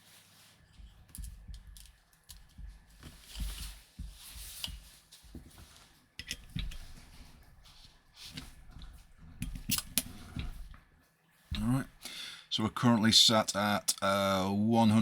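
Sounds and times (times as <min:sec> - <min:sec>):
hands handling gear clicking: 0:00.8 - 0:05.6, 0:06.2 - 0:10.8.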